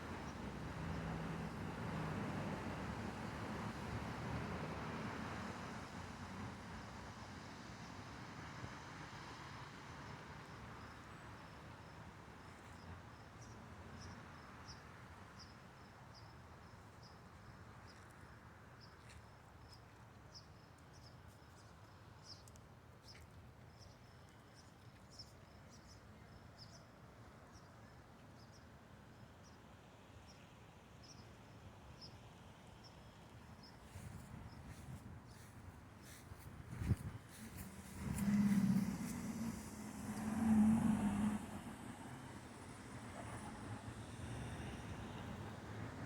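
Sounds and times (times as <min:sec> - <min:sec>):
low steady rumble: 0:36.1 - 0:45.6.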